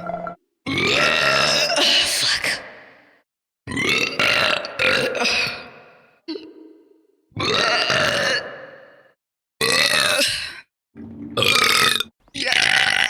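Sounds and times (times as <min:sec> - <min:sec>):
person burping: 0:00.0 - 0:02.5, 0:03.7 - 0:08.7, 0:09.6 - 0:10.4, 0:11.3 - 0:13.0.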